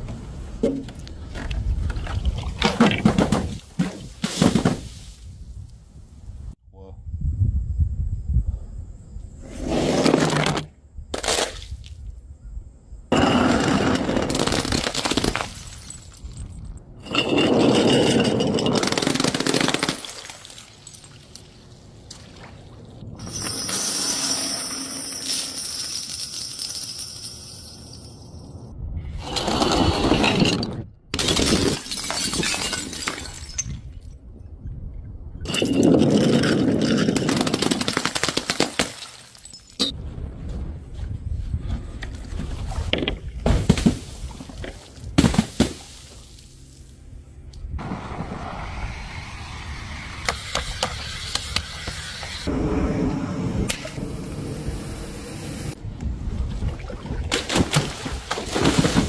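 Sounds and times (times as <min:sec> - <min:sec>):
glass bottles shattering: 0:13.2 - 0:21.4, 0:23.2 - 0:28.4, 0:30.2 - 0:34.1, 0:35.5 - 0:39.9
steady rushing noise: 0:47.7 - 0:56.1.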